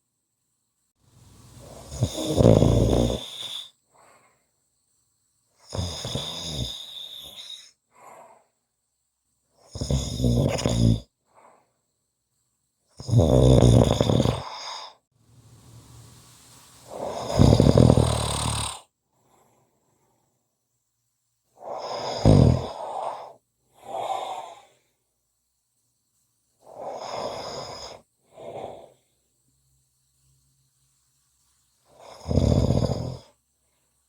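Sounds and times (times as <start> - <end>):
rattling snoring: 1.6 - 3.7, 5.7 - 7.4, 9.8 - 11.1, 13.0 - 14.6, 16.9 - 18.9, 21.8 - 22.9, 32.0 - 33.3.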